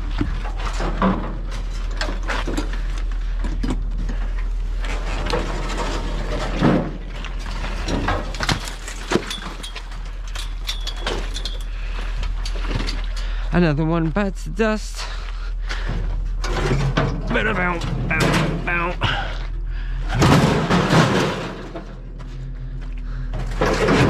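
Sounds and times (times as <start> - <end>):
steady low hum: 0.0 - 24.0
scrap metal clanking: 4.8 - 11.8, 15.8 - 19.3, 20.0 - 22.3, 23.2 - 24.0.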